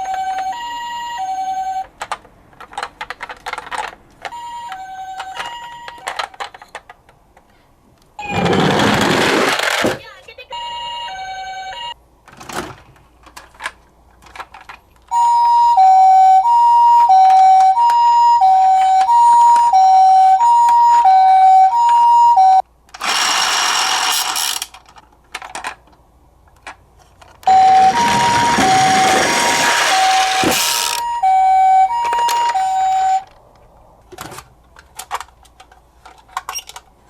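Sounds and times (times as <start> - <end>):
toy two-tone siren: 0.0 - 1.9, 4.2 - 6.3, 8.2 - 8.9, 10.5 - 12.0, 15.1 - 24.1, 27.5 - 33.3.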